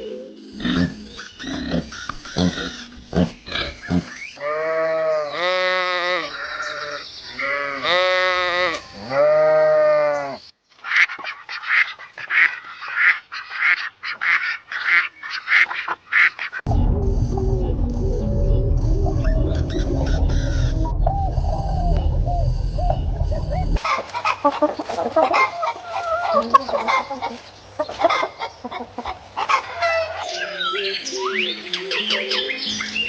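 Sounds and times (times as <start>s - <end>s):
goats and sheep bleating: 3.9s - 10.4s
ducks chattering calls: 10.8s - 16.6s.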